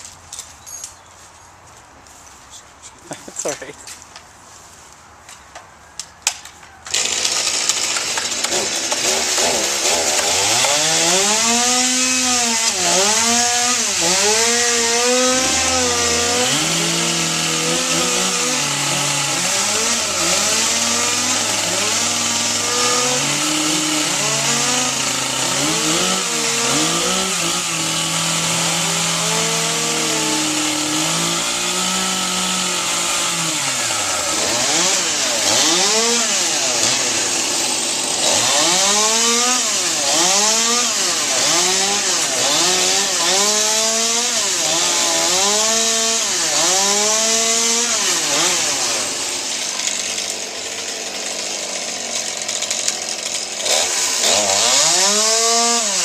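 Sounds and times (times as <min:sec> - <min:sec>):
chainsaw revving: 0:06.9 - 0:56.0.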